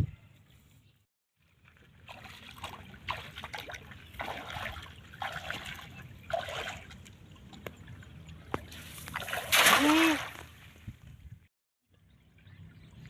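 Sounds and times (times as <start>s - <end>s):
splashy bursts: 8.7s - 10.5s.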